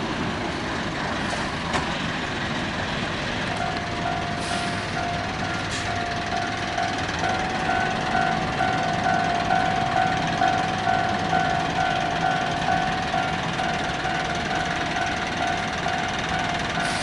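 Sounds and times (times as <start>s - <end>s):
heavy vehicle rumbling by: 0.0s - 17.0s
level crossing alarm ringing: 3.5s - 17.0s.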